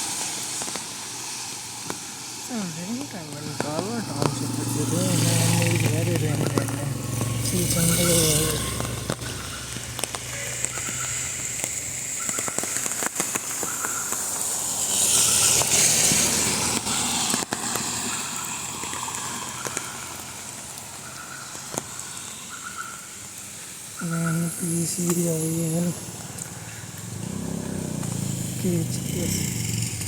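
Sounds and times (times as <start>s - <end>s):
crackling raindrop impacts: 0.0s - 30.0s
rain falling: 0.0s - 30.0s.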